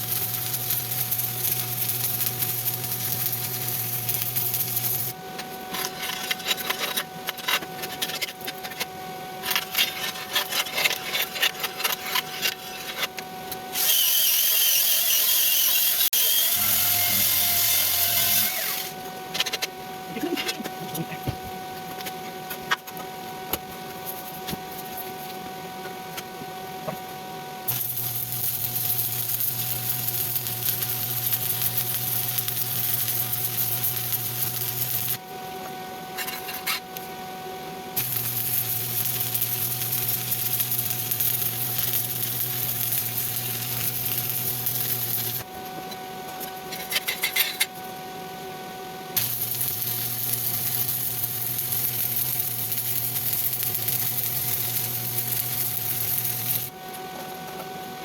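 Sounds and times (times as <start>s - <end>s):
welding arc crackling and hissing: 0.0s - 5.2s, 13.8s - 19.0s, 27.7s - 35.3s, 38.0s - 45.6s, 49.2s - 56.8s.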